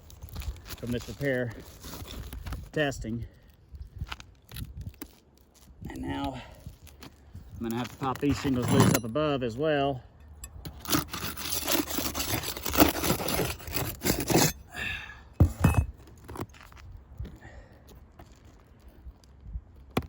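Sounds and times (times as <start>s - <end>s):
tool scraping roof shingles: 7.7s - 9.2s, 10.6s - 14.7s.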